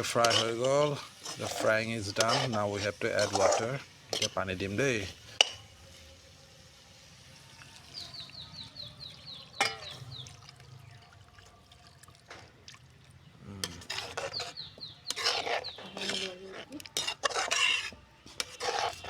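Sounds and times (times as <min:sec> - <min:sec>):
water pouring into a pot: 0:00.0 - 0:14.3.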